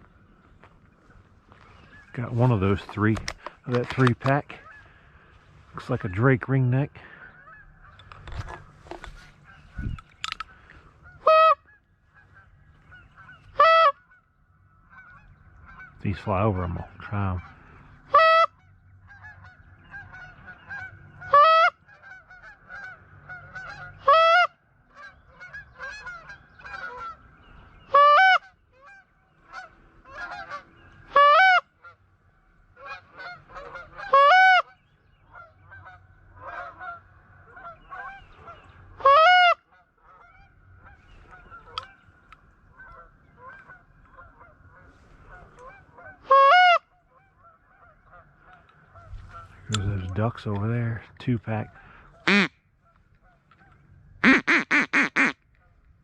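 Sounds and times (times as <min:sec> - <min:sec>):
goose honking: 0:01.8 - 0:06.4, 0:07.0 - 0:32.1, 0:32.7 - 0:55.8
fainter honks and calls: 0:52.2 - 0:52.5, 0:54.2 - 0:55.4.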